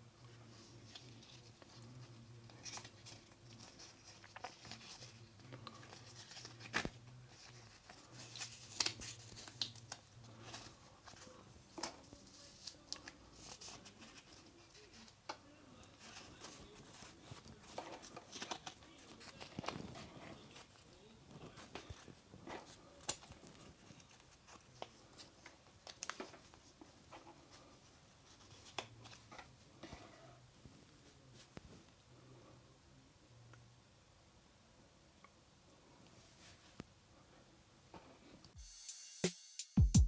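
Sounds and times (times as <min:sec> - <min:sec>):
paper and card rustling and tearing: 0:00.4 - 0:30.0.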